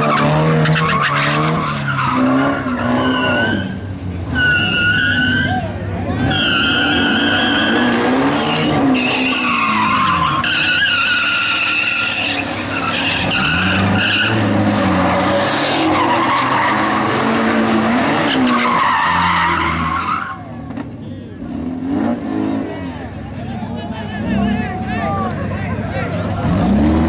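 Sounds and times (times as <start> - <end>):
tyres squealing: 0.1 - 17.4, 18.3 - 20.5
engine revving: 26.3 - 27.0.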